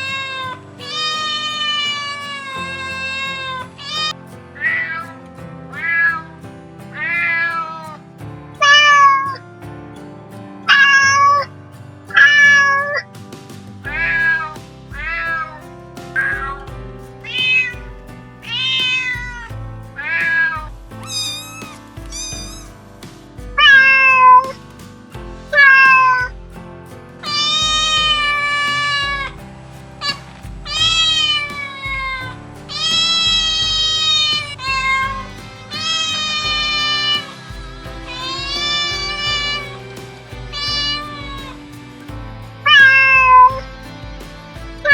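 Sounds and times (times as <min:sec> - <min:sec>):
cat meowing: 0:00.0 - 0:04.1, 0:14.1 - 0:15.6, 0:17.2 - 0:17.8, 0:18.4 - 0:19.5, 0:20.4 - 0:22.7, 0:30.0 - 0:37.5, 0:38.1 - 0:39.8, 0:40.5 - 0:41.6, 0:42.6 - 0:43.6
background music with low beat: 0:00.0 - 0:44.9.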